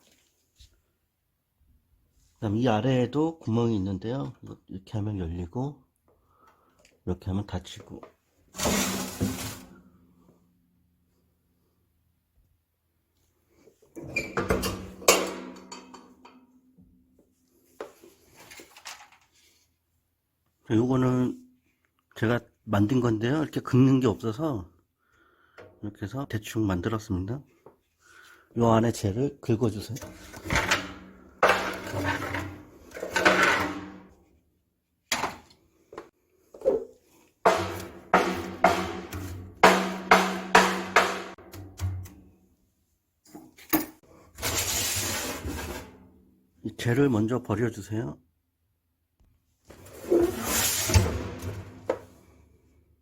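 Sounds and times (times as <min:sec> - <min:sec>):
metal scraping: 0:08.6 - 0:09.8, 0:30.0 - 0:34.2, 0:44.4 - 0:46.0, 0:49.7 - 0:52.2
metal knocks on stove: 0:37.5 - 0:41.9.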